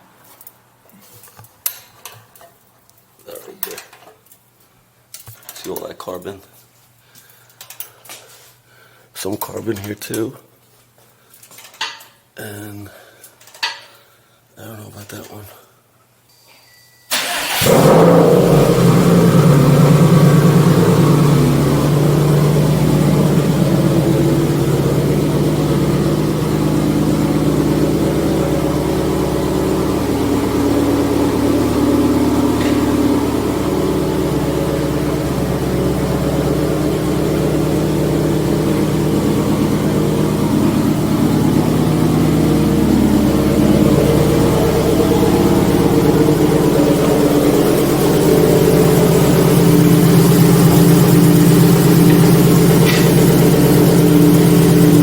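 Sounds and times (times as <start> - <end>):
car engine idling: 17.1 - 55.0.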